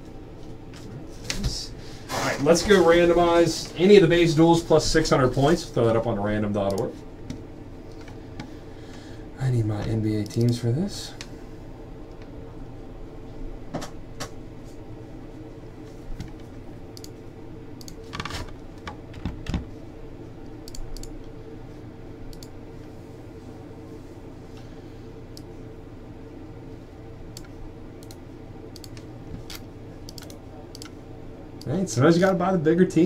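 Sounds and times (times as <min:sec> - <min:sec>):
steady low hum: 0:00.0 - 0:33.0
keyboard typing: 0:28.8 - 0:30.9.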